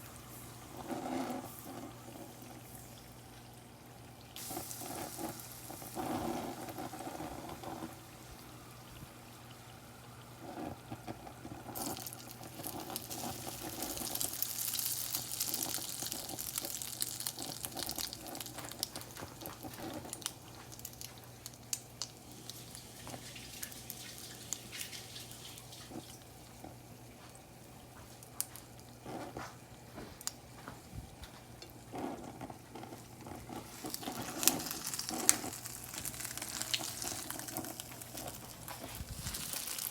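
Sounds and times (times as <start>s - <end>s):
oil sizzling in a deep fryer: 0.0s - 39.9s.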